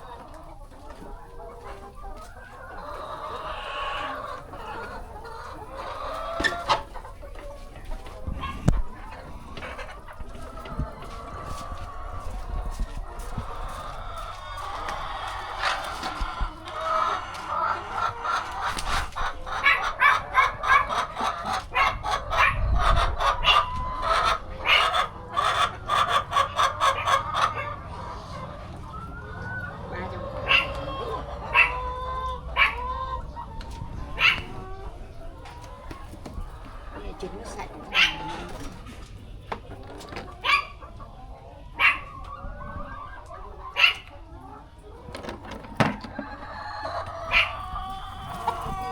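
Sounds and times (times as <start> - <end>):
hens clucking: 0.0 - 48.9.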